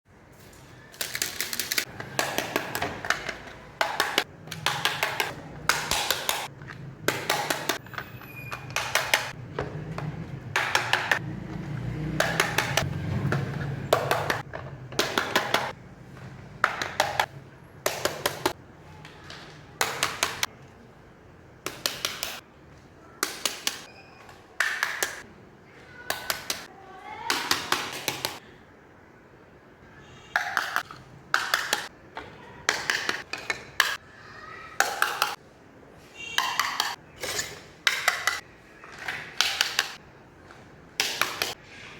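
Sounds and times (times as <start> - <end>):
small plastic pieces clicking: 0.9 - 1.9.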